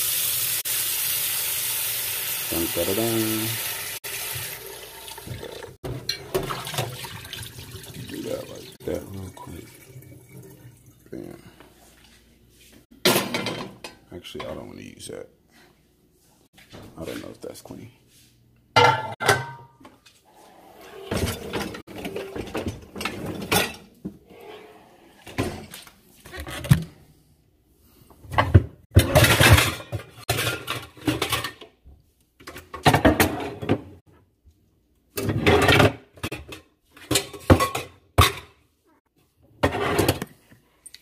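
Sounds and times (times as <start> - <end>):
pots and dishes clattering: 5.3 - 7.2, 13.0 - 14.6, 18.8 - 19.9, 21.0 - 24.1, 28.3 - 31.8, 32.4 - 34.0, 35.2 - 38.6.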